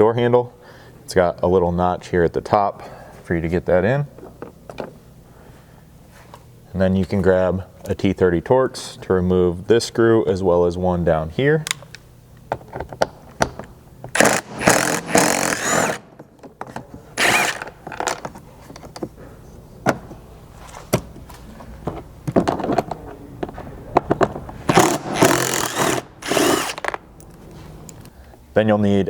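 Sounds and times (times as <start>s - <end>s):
power driver bursts: 14.1s - 16.1s, 17.2s - 17.8s, 24.7s - 27.0s
tool and screw clicks: 14.2s - 16.1s, 17.2s - 18.3s, 24.7s - 27.0s.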